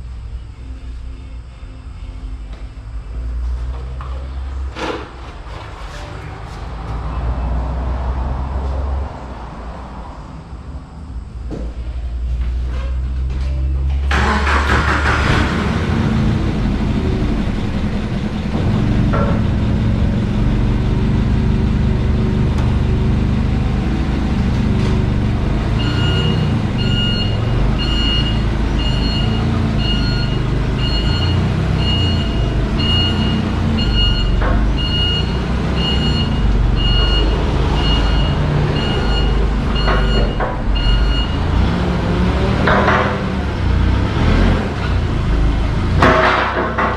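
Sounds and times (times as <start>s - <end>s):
heavy vehicle engine rumbling: 0.0s - 46.9s
reversing alarm beeping: 25.2s - 41.7s.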